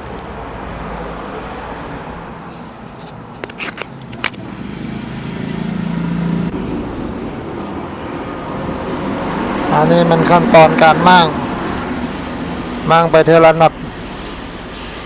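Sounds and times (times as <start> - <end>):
steady background noise: 0.0 - 15.0
low engine hum: 4.0 - 15.0.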